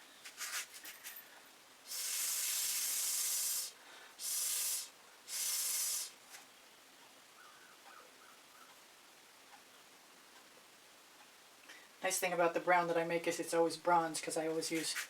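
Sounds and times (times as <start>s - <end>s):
air blowing hiss: 1.8s - 6.3s.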